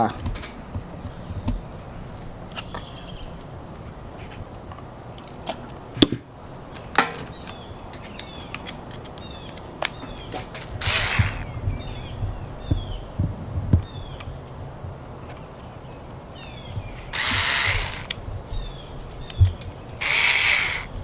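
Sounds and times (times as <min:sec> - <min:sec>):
hand tools clicking on plastic: 0:08.0 - 0:11.5.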